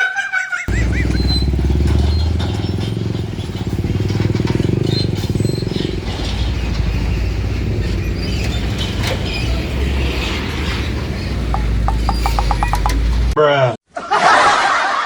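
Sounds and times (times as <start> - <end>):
diesel engine running: 0.7 - 13.4.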